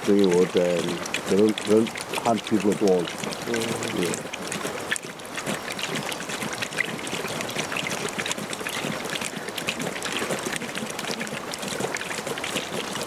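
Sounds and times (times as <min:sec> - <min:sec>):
lions lapping water: 0:00.0 - 0:13.0.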